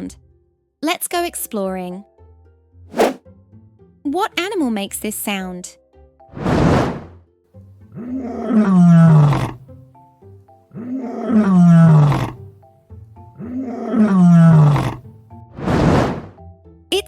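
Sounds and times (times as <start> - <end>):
background music: 0.0 - 6.5, 7.1 - 17.0
lion roaring: 7.9 - 9.7, 10.7 - 12.5, 13.3 - 16.4.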